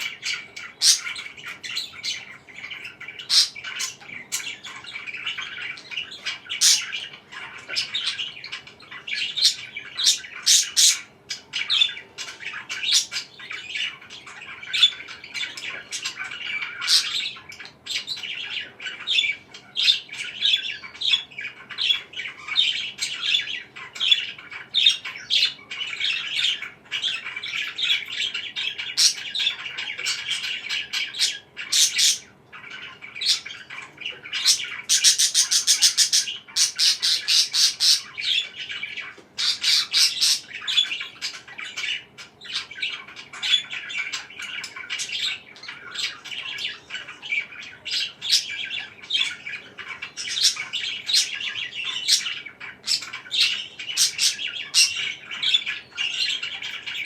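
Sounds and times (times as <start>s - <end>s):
parakeet squawks: 0.0s - 57.0s
parakeets chirping and chattering: 0.0s - 57.0s
rapid harsh bird calls: 0.0s - 57.0s.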